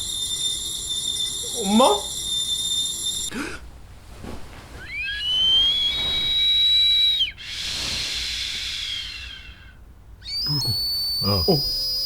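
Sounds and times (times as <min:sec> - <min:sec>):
kettle whistling: 0:00.0 - 0:03.3, 0:04.8 - 0:07.4, 0:10.2 - 0:12.0
hiss of steam: 0:07.5 - 0:09.0.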